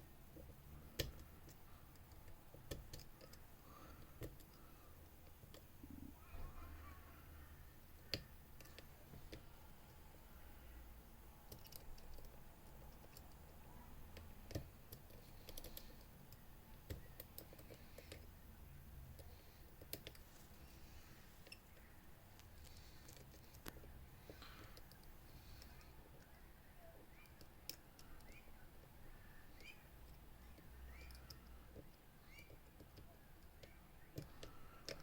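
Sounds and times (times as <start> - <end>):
lock picks clicking and scraping: 0.3 - 5.8, 11.4 - 20.4, 21.4 - 26.4, 27.0 - 35.0.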